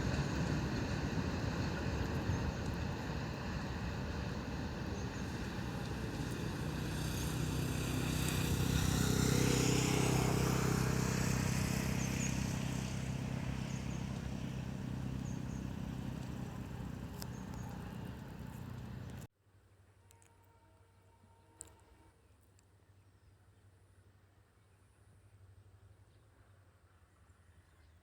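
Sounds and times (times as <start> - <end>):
diesel locomotive engine humming: 0.0 - 19.3.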